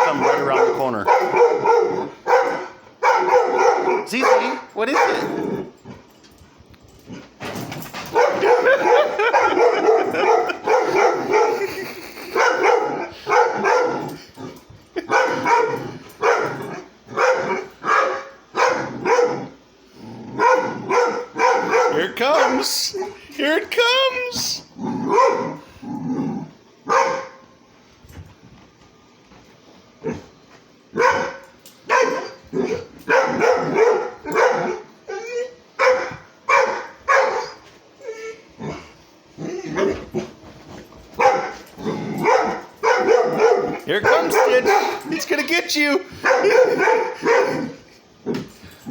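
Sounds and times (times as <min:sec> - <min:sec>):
dog barking: 0:00.0 - 0:05.3, 0:08.1 - 0:11.7, 0:12.4 - 0:14.1, 0:15.0 - 0:19.6, 0:20.4 - 0:22.7, 0:25.1 - 0:25.6, 0:26.9 - 0:27.4, 0:31.0 - 0:34.9, 0:35.8 - 0:37.6, 0:41.2 - 0:41.6, 0:42.2 - 0:45.1, 0:46.2 - 0:47.8.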